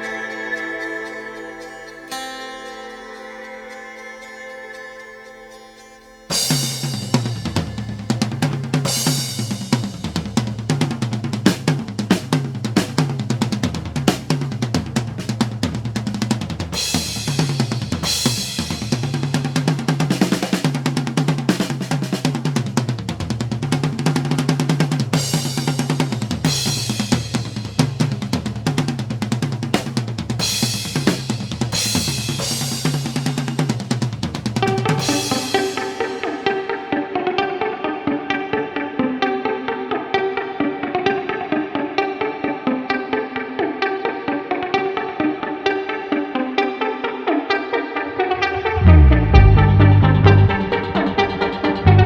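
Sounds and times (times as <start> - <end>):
music with drum kit: 6.3 - 36.8, 48.4 - 50.8.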